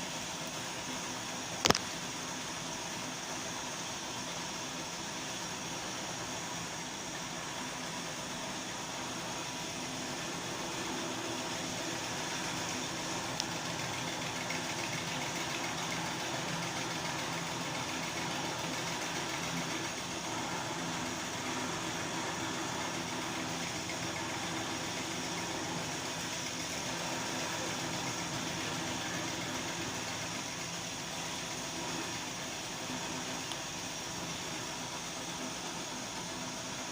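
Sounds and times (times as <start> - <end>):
machine droning with hiss: 0.0 - 36.9.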